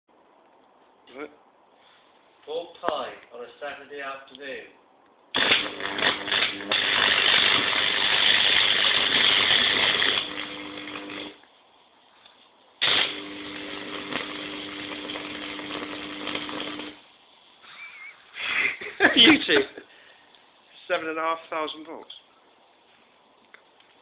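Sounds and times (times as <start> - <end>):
electric arc crackling buzz: 5.3 - 11.6, 12.8 - 19.7.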